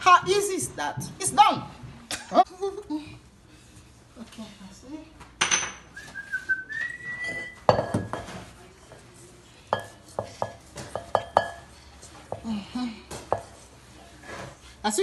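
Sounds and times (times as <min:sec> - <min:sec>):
thin high squeak: 0:07.1 - 0:07.6.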